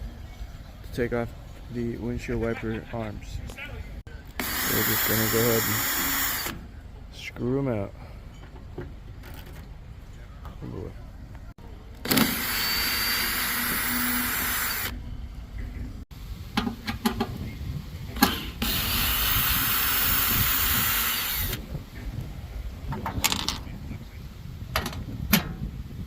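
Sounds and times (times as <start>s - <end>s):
power drill spinning: 4.4s - 6.6s, 12.0s - 14.9s, 18.4s - 21.6s.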